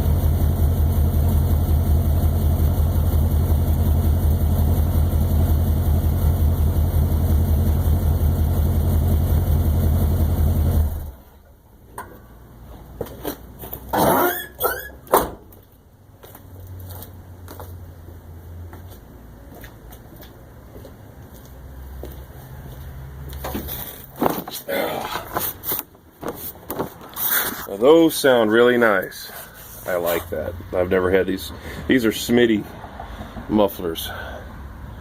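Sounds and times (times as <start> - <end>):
car engine idling: 0.0 - 11.6
short squeaks and clicks: 13.9 - 15.2.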